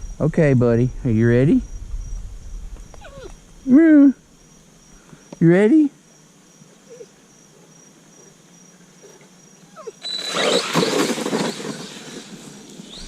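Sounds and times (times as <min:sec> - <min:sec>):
tyres churning across yard: 0:07.5 - 0:13.0
electric motor whining: 0:10.0 - 0:13.0.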